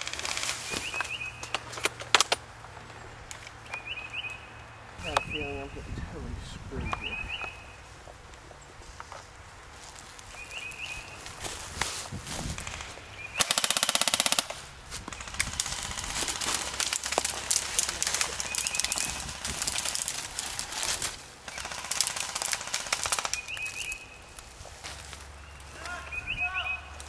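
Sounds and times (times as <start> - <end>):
airsoft fire rattles and clicks: 0.0 - 3.8, 12.5 - 24.0
airsoft rifle full-auto burst: 12.6 - 17.3, 21.4 - 23.9.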